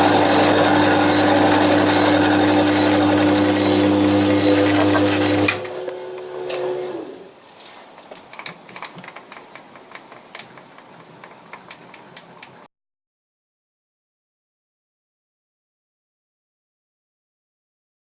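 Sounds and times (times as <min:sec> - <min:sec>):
electric motor winding down: 0:00.0 - 0:07.3.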